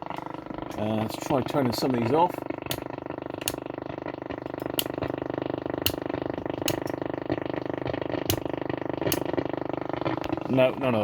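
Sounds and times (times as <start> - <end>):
pulsing radio interference buzz: 0.0 - 11.0
sharp clicks: 2.6 - 3.6, 4.6 - 5.2, 5.8 - 7.0.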